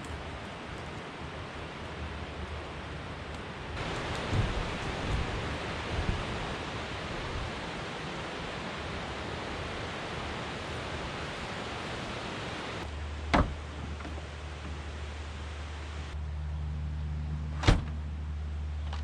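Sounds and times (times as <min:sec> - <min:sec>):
wind: 0:00.0 - 0:19.0
running water: 0:03.8 - 0:16.2.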